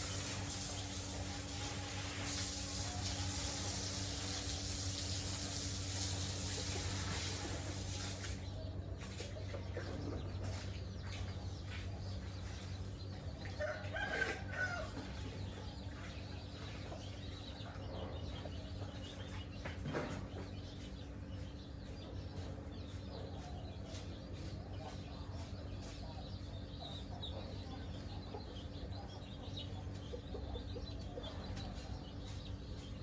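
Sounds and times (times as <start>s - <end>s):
steady low hum: 0.0s - 33.0s
chickens clucking: 9.0s - 33.0s.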